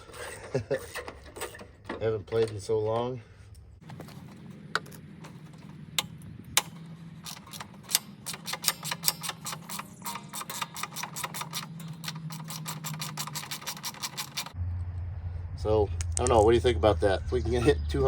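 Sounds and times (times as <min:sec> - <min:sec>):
hand tools clicking: 0:06.0 - 0:14.6.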